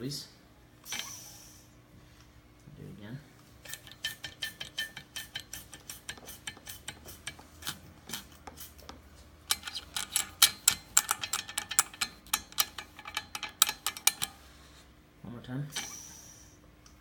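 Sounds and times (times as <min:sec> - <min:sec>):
metal flap clicking and rattling: 0:03.7 - 0:07.4, 0:09.5 - 0:14.4.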